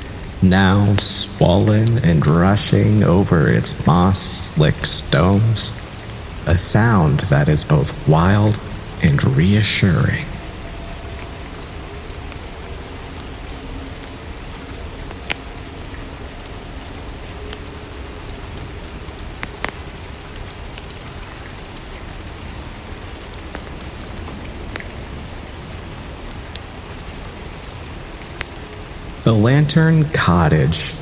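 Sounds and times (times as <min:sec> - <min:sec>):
soft rainfall: 0:00.0 - 0:31.0.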